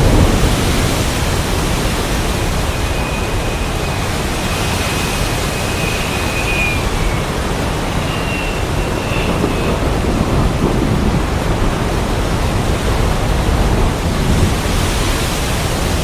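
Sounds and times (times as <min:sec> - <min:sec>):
heavy rain: 0:00.0 - 0:16.0
strong wind: 0:00.0 - 0:16.0
faint high whistle: 0:02.2 - 0:10.1.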